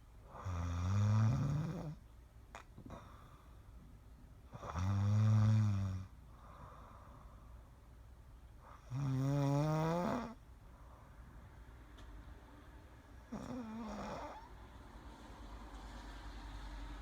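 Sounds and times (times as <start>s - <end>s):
buzzing snores: 0.3s - 2.0s, 4.5s - 6.2s, 8.7s - 10.4s, 13.3s - 14.5s
soft breath: 2.8s - 4.0s, 6.2s - 7.9s, 10.6s - 11.8s.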